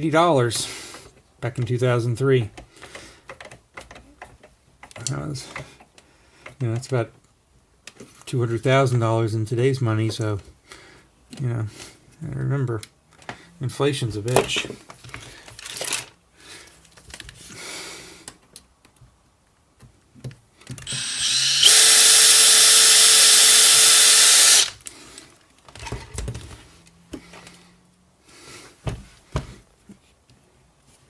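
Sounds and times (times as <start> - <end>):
power drill boring: 20.8 - 24.8.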